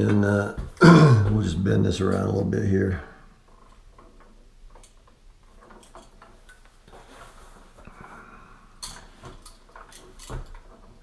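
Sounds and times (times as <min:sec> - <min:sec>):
wire bending clicks: 0:03.4 - 0:06.9.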